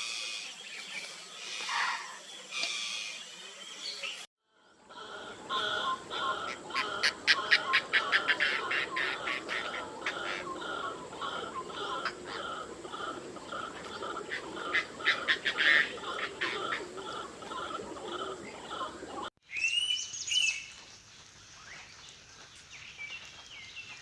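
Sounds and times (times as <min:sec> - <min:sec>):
bird calling: 0:05.0 - 0:20.7.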